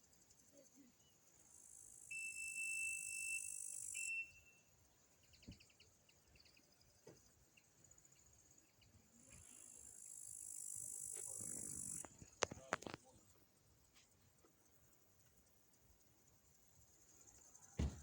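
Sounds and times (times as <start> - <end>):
insects buzzing: 0.1 - 18.0
pulsed insect chirps: 1.4 - 4.7, 7.6 - 12.4
high whistle-like tone: 2.1 - 4.7.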